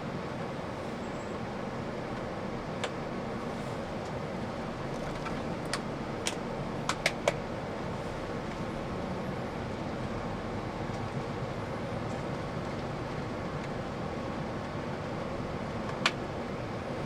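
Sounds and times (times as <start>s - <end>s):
bus engine and road noise: 0.0s - 17.0s.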